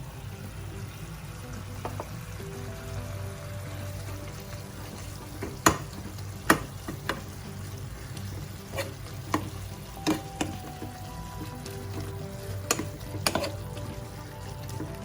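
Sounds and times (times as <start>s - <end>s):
food sizzling in a pan: 0.0s - 15.0s
spoon stirring: 8.2s - 15.0s.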